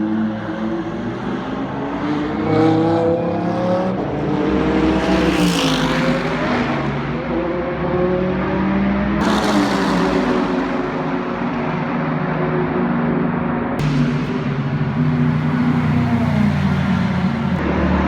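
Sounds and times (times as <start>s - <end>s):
race car engines: 0.0s - 18.0s
race car passing close: 13.8s - 18.0s.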